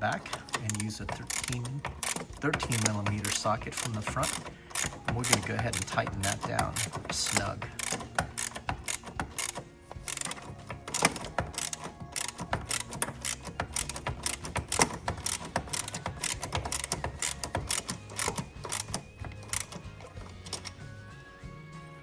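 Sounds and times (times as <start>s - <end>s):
ratchet clicking: 0.0s - 20.8s.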